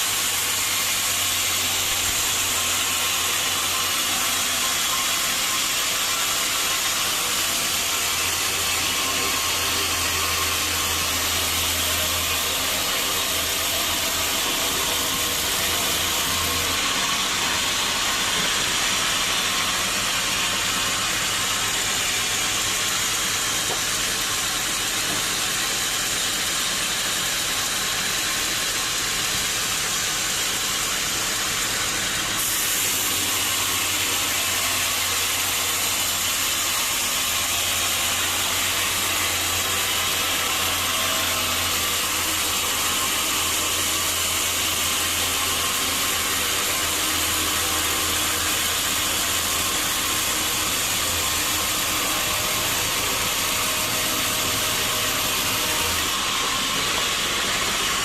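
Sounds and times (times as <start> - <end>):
sawmill saw cutting log: 0.0 - 58.0.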